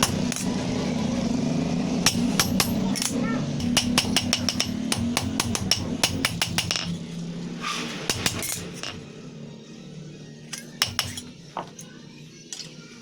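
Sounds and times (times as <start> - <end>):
hammer tapping on steel: 2.1 - 7.0, 10.6 - 11.8.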